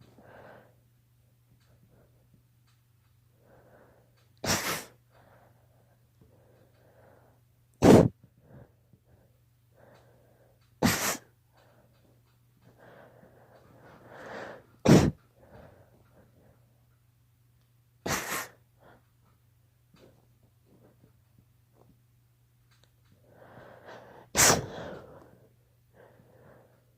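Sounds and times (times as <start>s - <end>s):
breaths and sniffs: 3.4s - 16.6s, 18.0s - 19.1s, 23.2s - 26.9s
girl sneezing: 4.4s - 4.9s, 7.8s - 8.1s, 10.8s - 11.2s, 14.9s - 15.2s, 18.1s - 18.5s, 24.4s - 24.8s.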